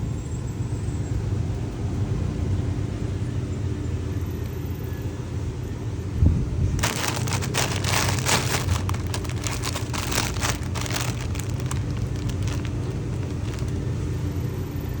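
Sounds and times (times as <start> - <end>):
plastic packaging crinkling: 6.8 - 14.1.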